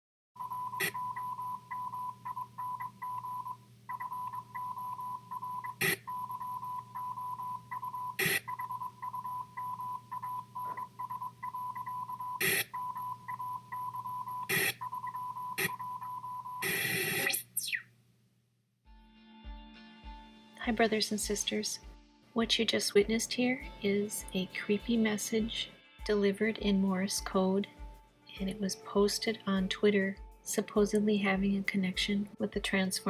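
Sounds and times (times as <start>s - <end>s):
morse code beeps: 0.4s - 17.4s
static crackles: 1.6s - 18.0s.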